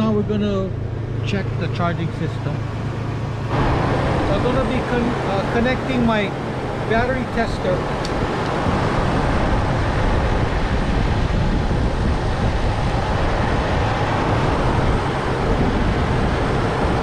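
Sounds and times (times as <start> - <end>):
engine idling: 0.0 - 9.5.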